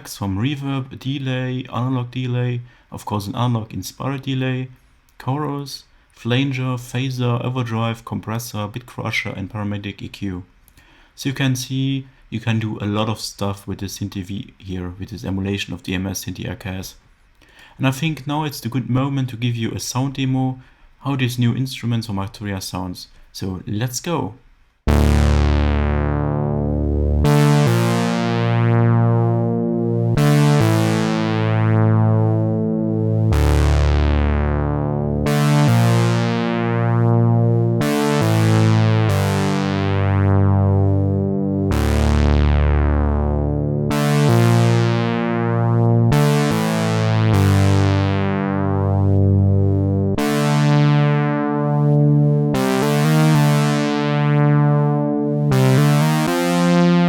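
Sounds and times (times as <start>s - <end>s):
synthesizer sustained chords: 24.9s - 57.0s.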